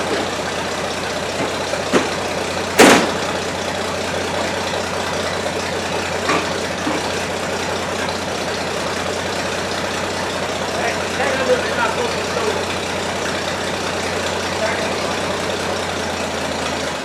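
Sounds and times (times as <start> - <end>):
car engine running: 0.0 - 17.0
sharp clack: 2.8 - 3.3.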